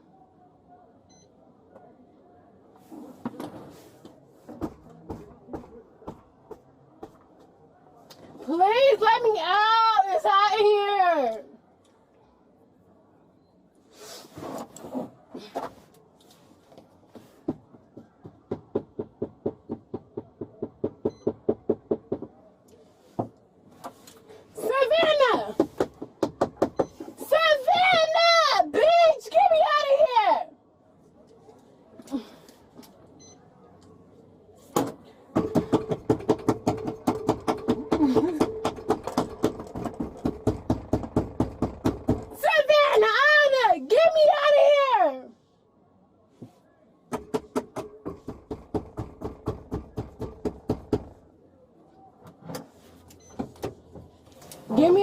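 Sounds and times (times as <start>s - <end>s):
knocking inside a car: 17.4s - 22.4s, 25.6s - 27.0s, 35.4s - 42.4s, 47.1s - 51.2s
fast repeated banging: 25.0s - 27.1s, 34.8s - 42.4s, 47.1s - 51.2s.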